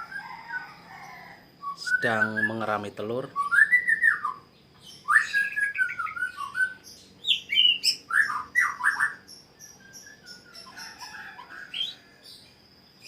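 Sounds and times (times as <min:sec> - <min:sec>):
bird singing gliding notes: 0:01.6 - 0:10.7
thin high chirping: 0:01.7 - 0:13.0.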